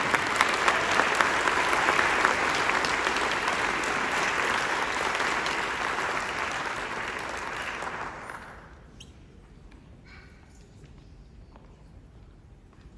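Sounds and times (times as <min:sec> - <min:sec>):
audience applause: 0:00.0 - 0:08.8.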